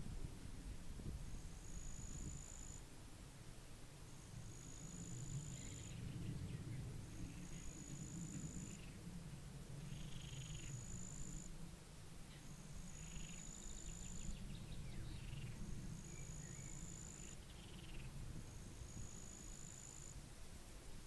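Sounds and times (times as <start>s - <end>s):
low wind rumble: 0.0s - 21.0s.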